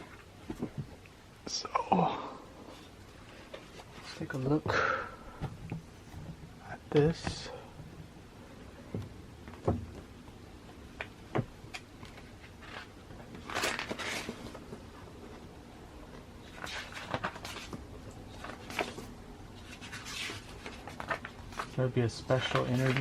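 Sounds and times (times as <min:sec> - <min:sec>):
pages turning: 0:11.8 - 0:14.8, 0:16.4 - 0:23.0.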